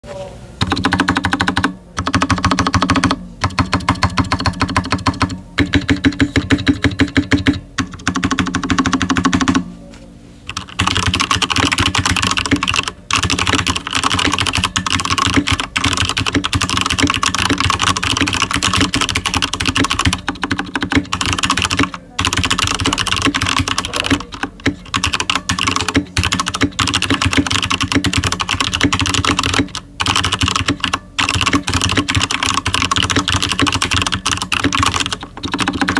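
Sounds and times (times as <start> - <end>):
keyboard keystroke clacks: 0.6 - 9.6, 10.5 - 35.9.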